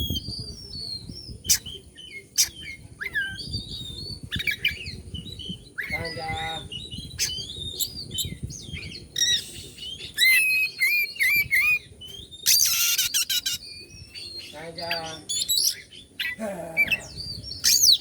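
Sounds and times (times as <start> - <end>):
magpie-robin singing: 0.0 - 18.0
bird rasping chatter: 12.4 - 13.8.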